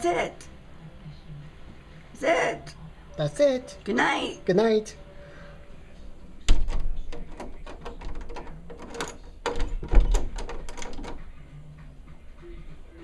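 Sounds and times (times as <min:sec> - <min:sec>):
clatter of clicks and knocks: 0:06.5 - 0:11.2.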